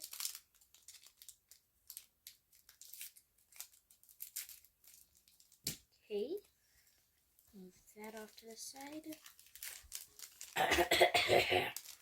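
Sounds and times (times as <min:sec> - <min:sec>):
foil wrapper tearing and crinkling: 0:00.0 - 0:05.8, 0:08.0 - 0:10.9, 0:11.5 - 0:12.0.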